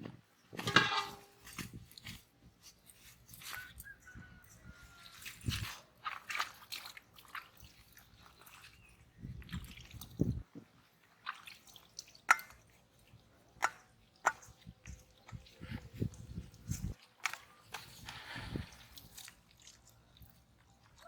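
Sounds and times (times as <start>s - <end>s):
muddy water splashing and dripping: 4.6s - 21.0s.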